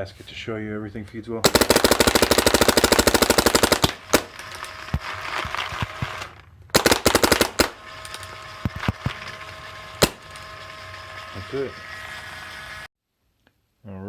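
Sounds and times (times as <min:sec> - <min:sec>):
paintball marker shots: 0:10.0 - 0:10.2.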